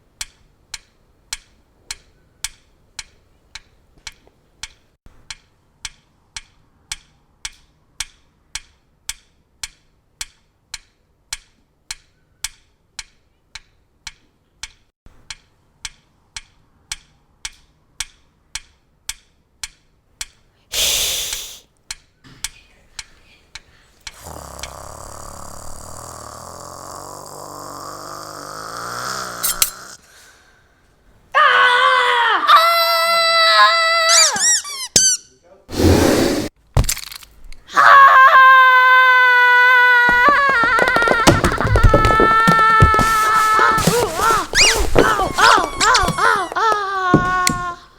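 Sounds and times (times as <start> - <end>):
squeaks gliding up and down: 43.1 - 47.5.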